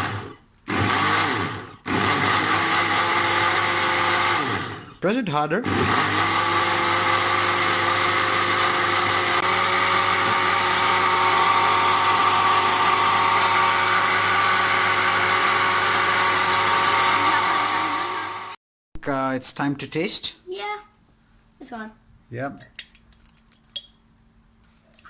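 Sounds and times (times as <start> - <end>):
blender motor whining: 0.0 - 5.0, 5.6 - 18.6.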